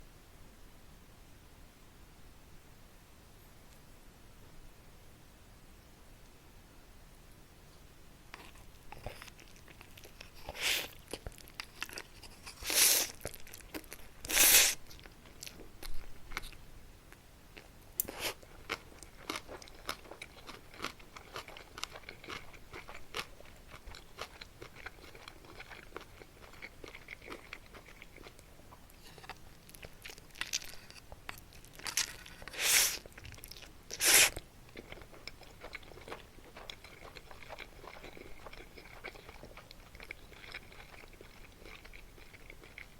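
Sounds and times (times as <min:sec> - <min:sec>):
small crisp chewing crunches: 0:08.3 - 0:16.6, 0:17.6 - 0:42.9
crunching bites of crisp snack: 0:08.4 - 0:16.6, 0:17.6 - 0:42.9.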